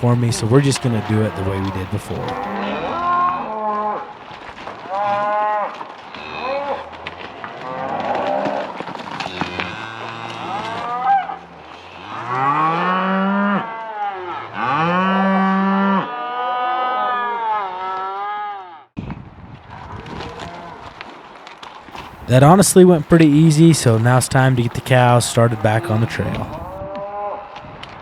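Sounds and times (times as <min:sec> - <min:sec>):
cattle bawling: 0:00.0 - 0:04.1, 0:07.6 - 0:18.5, 0:22.0 - 0:27.3.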